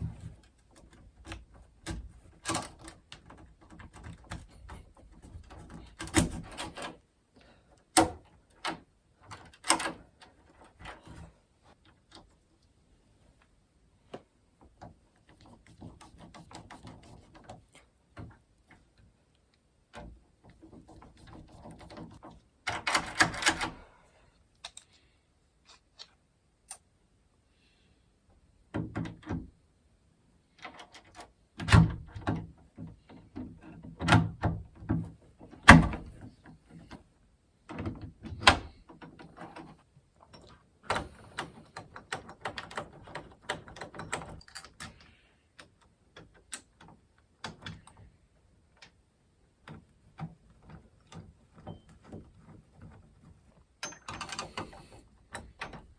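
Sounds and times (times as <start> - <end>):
door latch hardware clicking: 0.8 - 7.0, 22.7 - 23.8.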